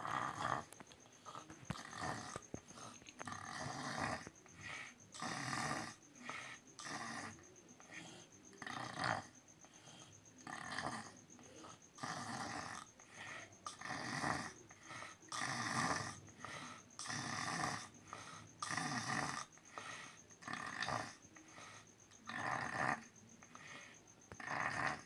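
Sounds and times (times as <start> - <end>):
man snoring: 0.0 - 25.0.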